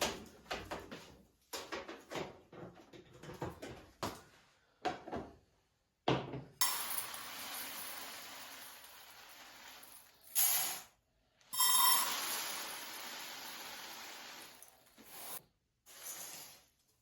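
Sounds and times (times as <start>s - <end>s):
cupboards drawers and dishes clattering: 0.0s - 4.0s, 6.1s - 6.6s.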